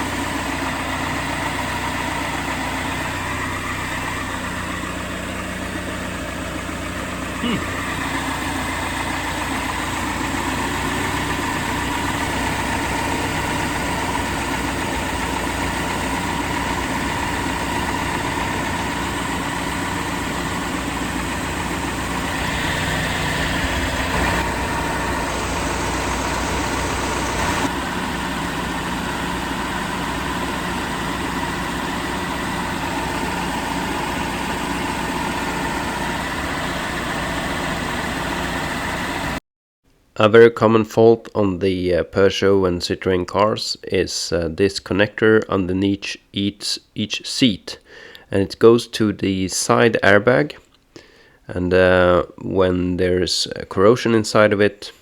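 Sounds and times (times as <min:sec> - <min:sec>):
car engine idling: 0:00.0 - 0:39.4.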